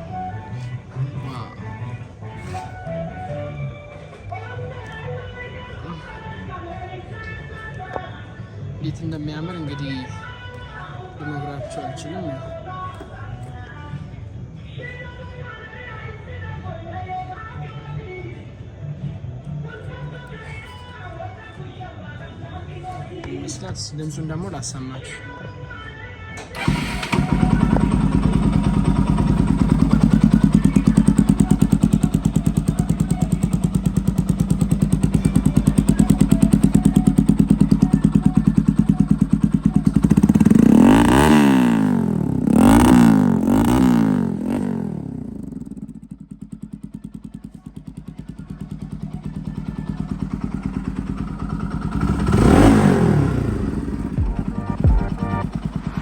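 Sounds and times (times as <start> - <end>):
motorcycle engine idling and revving: 8.9 - 14.1, 25.9 - 56.0.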